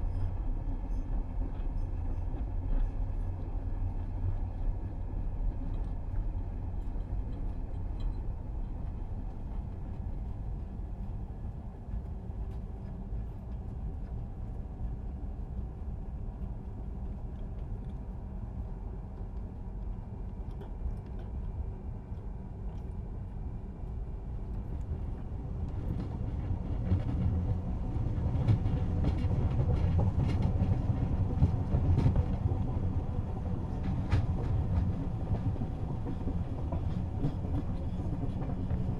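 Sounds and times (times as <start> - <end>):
train running rumble: 0.0 - 38.9
wheels rattling on track: 24.5 - 38.9.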